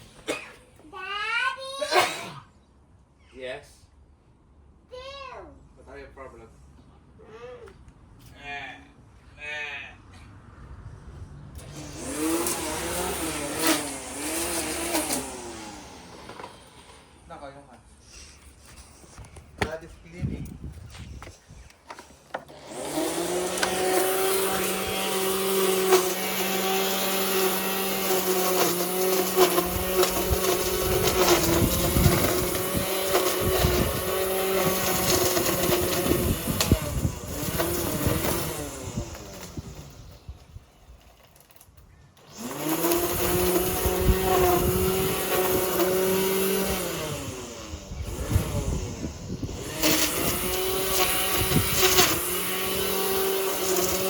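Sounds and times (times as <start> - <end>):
lawn mower motor running: 11.6 - 17.3, 21.9 - 54.0.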